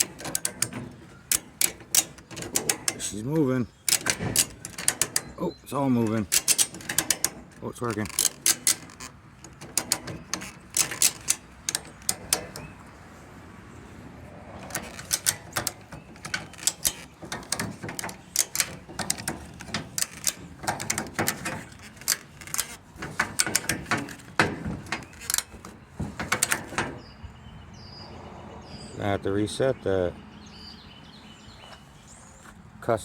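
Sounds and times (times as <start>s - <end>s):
ratchet buckle clicking: 0.0s - 3.0s, 3.9s - 5.4s, 6.0s - 12.7s, 14.6s - 27.0s.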